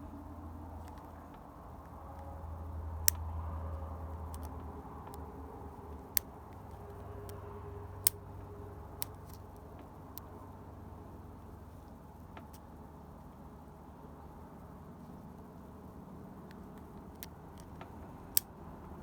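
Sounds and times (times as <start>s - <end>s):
low steady hum: 0.0s - 19.0s
lock pick metal clicks: 4.3s - 5.3s.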